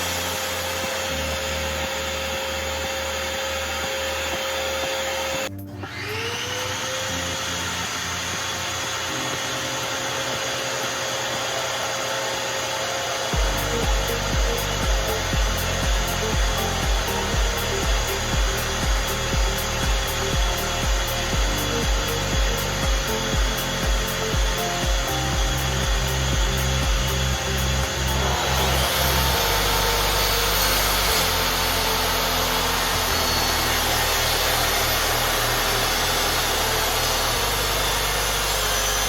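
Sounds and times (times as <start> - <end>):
motor-driven tool whining: 0.0 - 39.0
music with a steady beat: 13.4 - 39.0.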